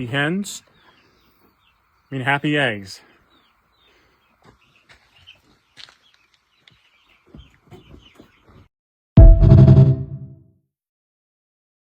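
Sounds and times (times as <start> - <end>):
chicks peeping: 3.1 - 8.7.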